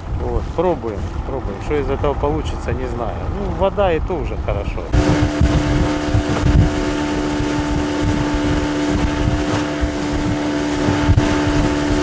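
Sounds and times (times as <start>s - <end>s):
wind buffeting microphone: 0.0s - 12.0s
outboard motor running: 4.9s - 12.0s.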